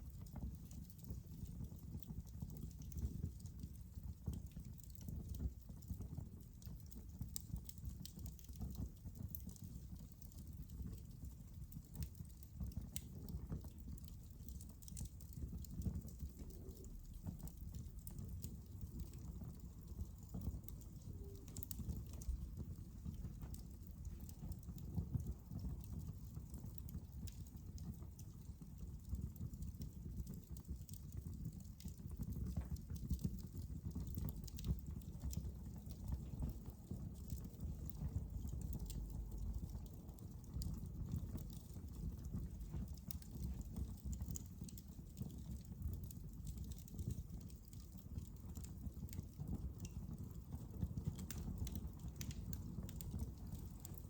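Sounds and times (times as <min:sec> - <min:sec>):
fire crackling in fireplace: 0:00.0 - 0:54.0.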